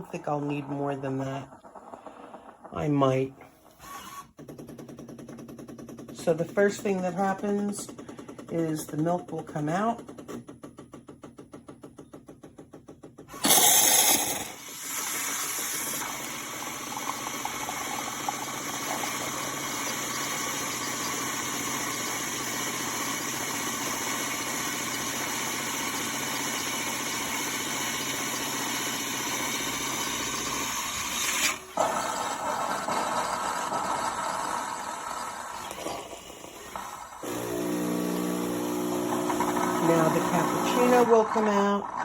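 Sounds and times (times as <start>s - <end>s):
pump pulsing: 13.3s - 42.0s
steam hissing frothing milk: 13.4s - 42.0s.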